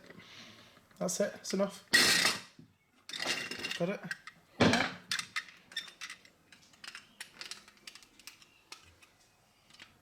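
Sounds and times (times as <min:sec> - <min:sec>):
small metal parts clicking: 0:05.1 - 0:09.9.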